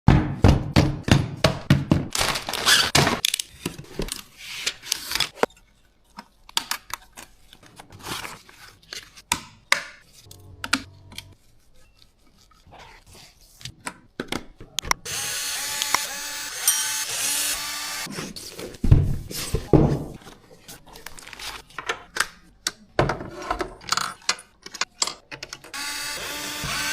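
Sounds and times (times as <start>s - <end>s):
power driver whirring: 15.1s - 18.1s, 25.7s - 26.9s
parts clicking and rattling: 23.5s - 25.8s.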